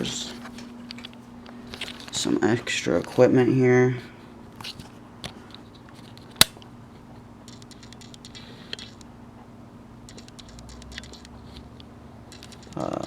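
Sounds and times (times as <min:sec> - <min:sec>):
faint steady hum: 0:00.0 - 0:13.0
small parts clicking and rattling: 0:07.4 - 0:09.1, 0:10.0 - 0:13.0.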